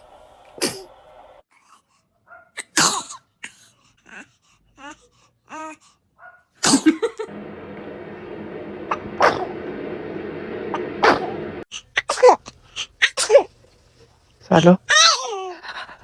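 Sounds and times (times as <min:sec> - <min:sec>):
steady background noise: 0:07.3 - 0:11.6
baby sneezing: 0:12.1 - 0:12.4, 0:13.0 - 0:13.5.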